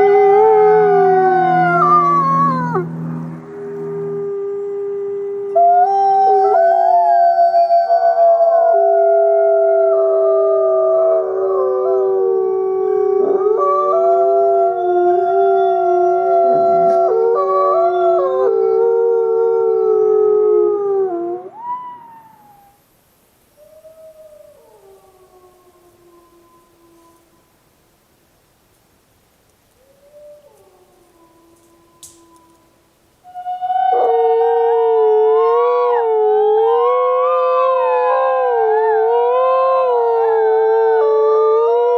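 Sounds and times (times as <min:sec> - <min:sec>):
wolves howling in chorus: 0:00.0 - 0:22.8, 0:29.9 - 0:41.9.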